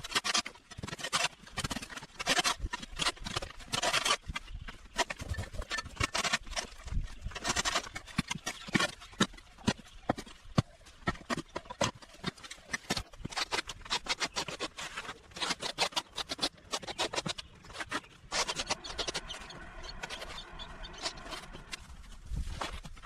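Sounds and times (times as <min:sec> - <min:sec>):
rapid scraping and knocking: 0:00.0 - 0:23.0
pitched drawn-out sound: 0:18.4 - 0:22.2.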